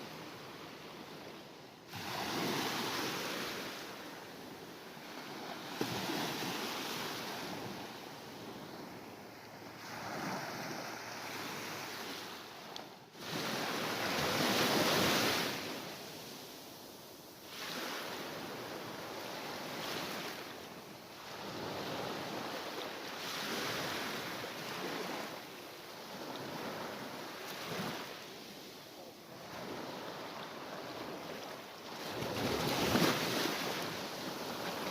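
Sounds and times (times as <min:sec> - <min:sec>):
sea waves breaking: 0:00.0 - 0:16.4, 0:26.0 - 0:34.9.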